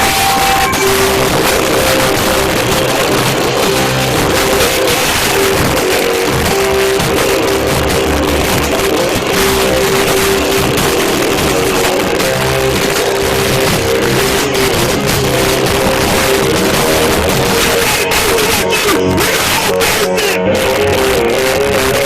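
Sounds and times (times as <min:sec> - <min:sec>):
distorted electric guitar strumming: 0:00.0 - 0:22.0
live rock band: 0:00.0 - 0:22.0.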